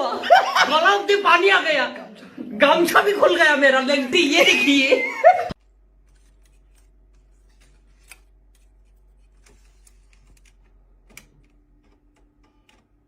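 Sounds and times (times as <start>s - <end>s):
faint clicks and taps: 5.6s - 13.0s.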